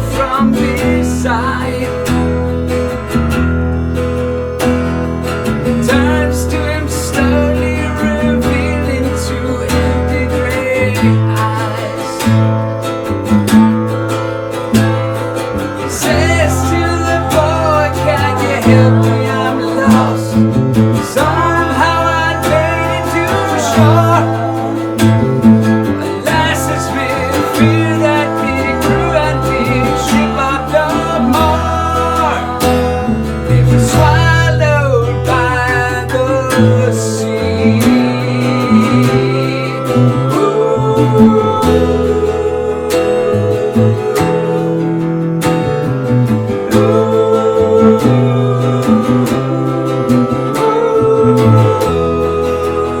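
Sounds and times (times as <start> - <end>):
acoustic guitar strumming: 0.0 - 53.0
bass line: 0.0 - 53.0
melodic lead line: 12.3 - 34.7.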